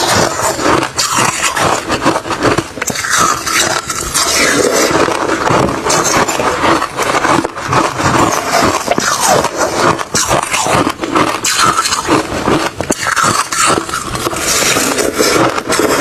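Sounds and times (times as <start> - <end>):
ice being chewed: 0.0 - 16.0.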